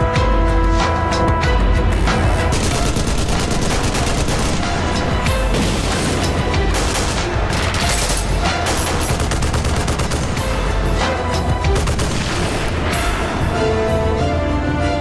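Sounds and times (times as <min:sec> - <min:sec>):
loud dramatic music: 0:00.0 - 0:15.0
rapid gunfire: 0:02.5 - 0:10.8, 0:11.6 - 0:12.8.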